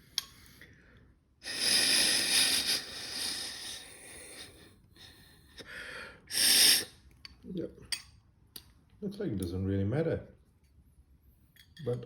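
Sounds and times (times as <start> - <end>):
person blowing air hissing: 1.4 - 4.7, 5.6 - 7.0.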